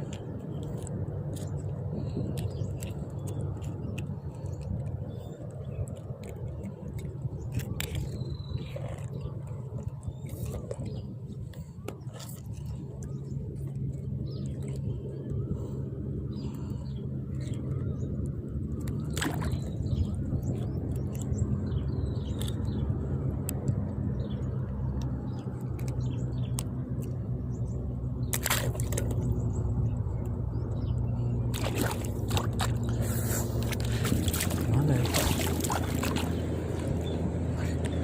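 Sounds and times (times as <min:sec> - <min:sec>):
engine humming: 0:00.0 - 0:38.0
water sloshing: 0:18.8 - 0:21.2, 0:28.3 - 0:29.3, 0:31.5 - 0:37.8.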